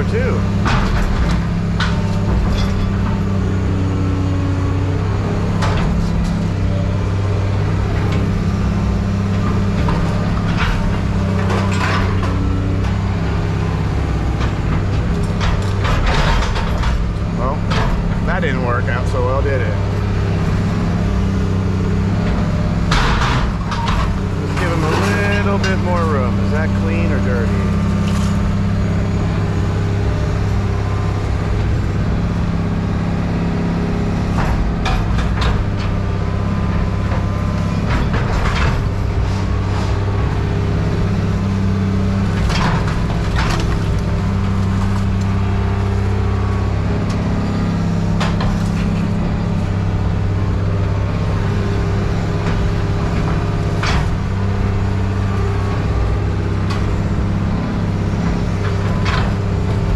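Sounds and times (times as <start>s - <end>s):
heavy machine engine running: 0.0s - 59.9s
scrap metal clanking: 22.9s - 28.5s.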